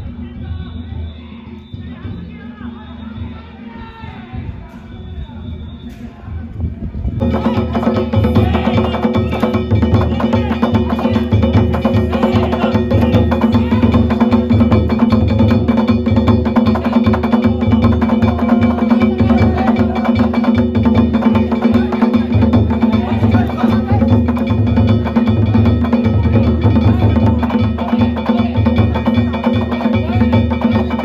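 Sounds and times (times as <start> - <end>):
taiko drum beating: 7.2 - 31.0.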